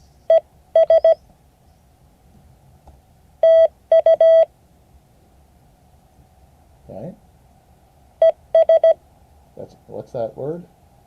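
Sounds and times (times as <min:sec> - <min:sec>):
morse code beeps: 0:00.3 - 0:01.2, 0:03.4 - 0:04.5, 0:08.2 - 0:09.0.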